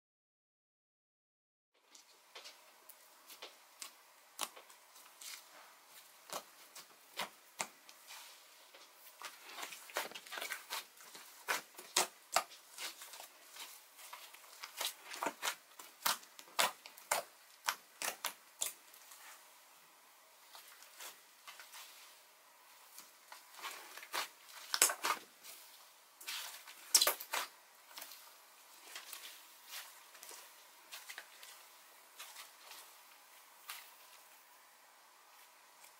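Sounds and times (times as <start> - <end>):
slime squished by hand: 9.2 - 18.8.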